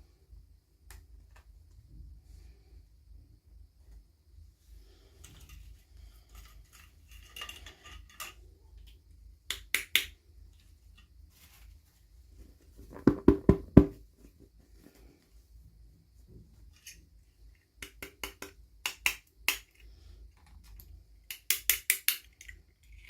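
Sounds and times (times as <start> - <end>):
plastic toy pieces clicking: 20.4 - 23.0.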